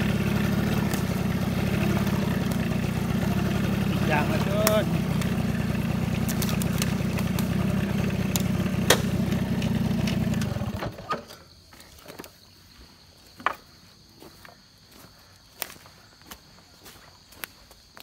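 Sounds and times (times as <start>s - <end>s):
small engine running: 0.0s - 11.0s.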